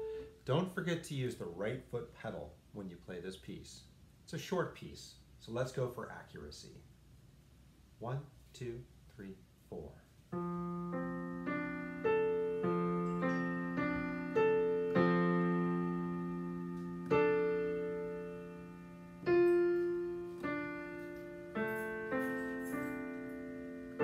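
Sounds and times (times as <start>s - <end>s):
slow piano piece: 10.3s - 24.0s.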